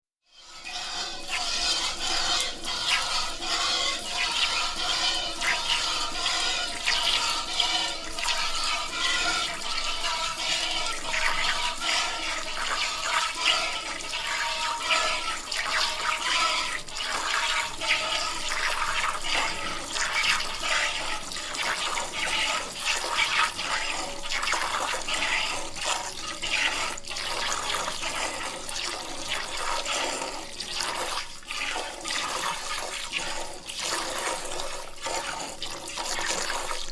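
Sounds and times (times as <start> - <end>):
milk streaming into container: 0.3 - 36.9.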